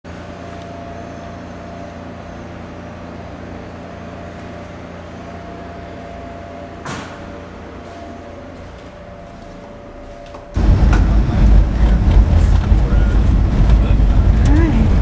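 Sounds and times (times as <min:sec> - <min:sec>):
vehicle running hum: 0:10.6 - 0:15.0.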